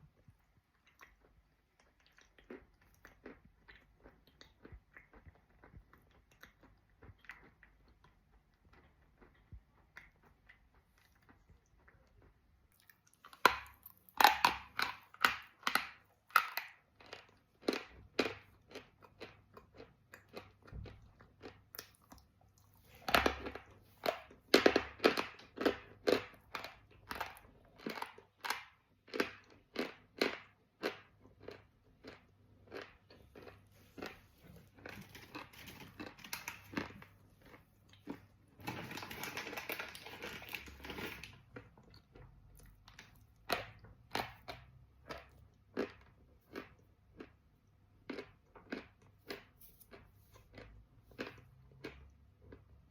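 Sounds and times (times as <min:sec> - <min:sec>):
chalk being chewed: 0:48.1 - 0:52.0.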